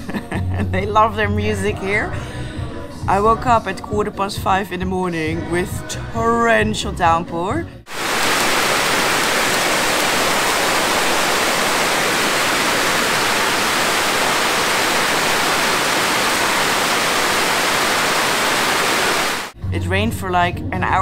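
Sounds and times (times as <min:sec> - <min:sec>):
heavy rain hiss: 0:07.9 - 0:19.6.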